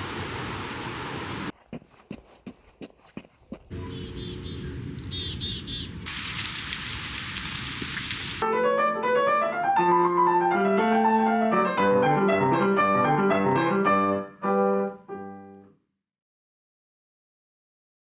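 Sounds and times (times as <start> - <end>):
solo keyboard music: 8.4 - 15.6.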